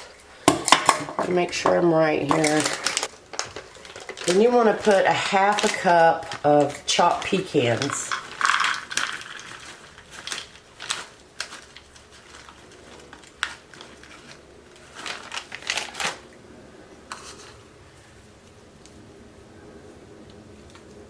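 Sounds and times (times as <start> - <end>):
plastic bag crinkling: 0.0 - 16.4.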